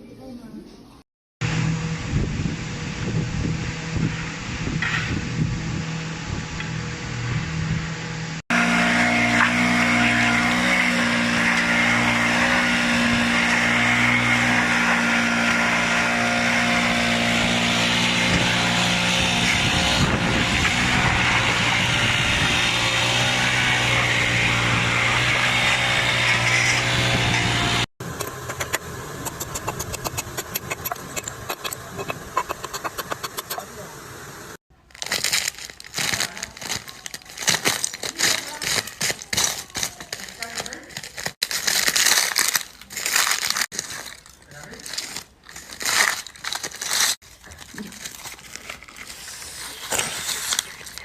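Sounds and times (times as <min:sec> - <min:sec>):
machine humming: 0:01.4 - 0:34.6
fast run of clicks: 0:28.2 - 0:33.6.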